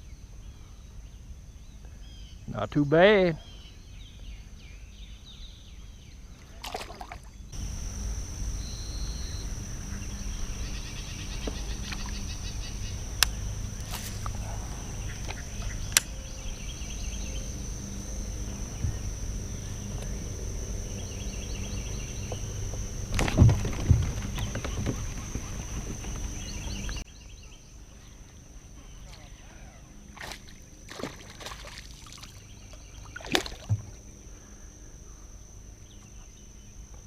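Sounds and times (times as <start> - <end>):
faint chirps: 5.4 - 30.2
high-pitched drone: 7.6 - 27.0
sharp clicks: 15.2 - 16.2.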